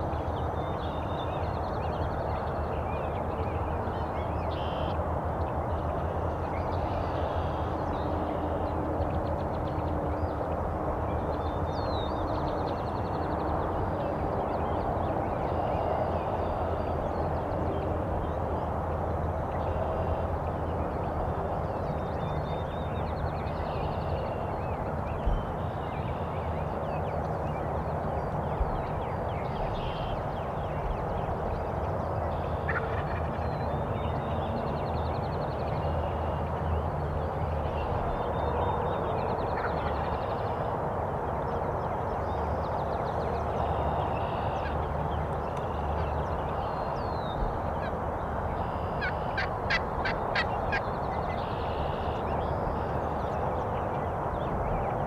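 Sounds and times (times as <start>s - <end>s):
distant turkey gobbling: 48.7s - 50.8s.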